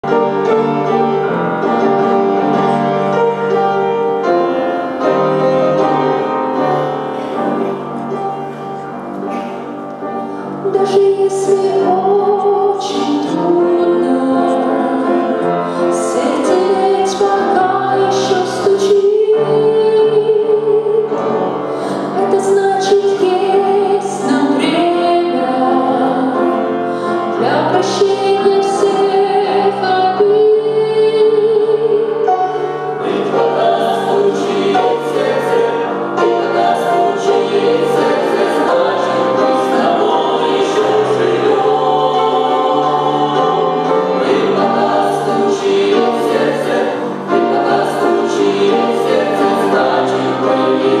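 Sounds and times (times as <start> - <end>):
women's choir singing: 0.0 - 51.0.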